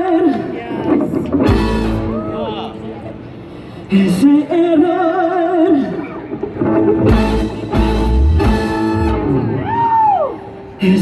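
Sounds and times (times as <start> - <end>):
live band playing: 0.7 - 3.5, 6.1 - 10.9
heavy low drum and bass beats: 1.2 - 2.4, 7.0 - 9.4
person singing with vibrato: 3.8 - 6.1, 10.5 - 11.0.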